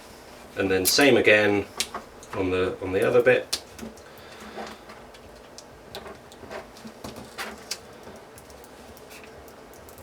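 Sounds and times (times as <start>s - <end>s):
squeegee scraping plastic film: 6.0s - 7.9s.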